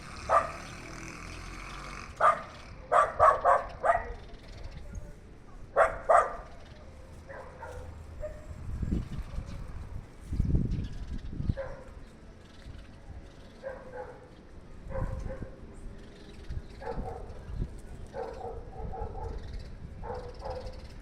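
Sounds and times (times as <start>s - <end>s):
dog barking: 0.3s - 0.7s, 2.2s - 4.2s, 5.7s - 6.5s, 7.3s - 8.5s, 11.5s - 12.0s, 13.6s - 14.3s, 14.9s - 15.6s, 16.8s - 17.4s, 18.1s - 20.8s.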